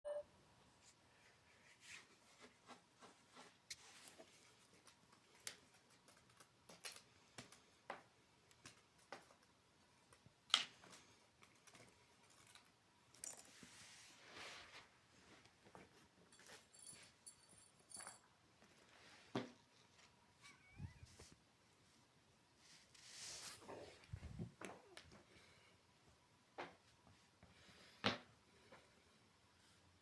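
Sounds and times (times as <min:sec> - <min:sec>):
soft hiss: 0:18.9 - 0:25.9.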